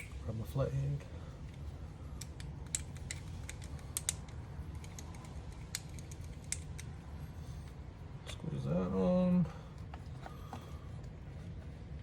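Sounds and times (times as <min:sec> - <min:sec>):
sharp metal clicks: 0:02.2 - 0:06.9.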